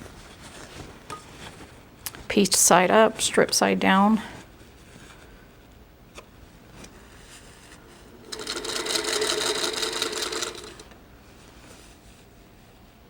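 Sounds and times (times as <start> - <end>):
sewing machine stitching: 8.3 - 11.0.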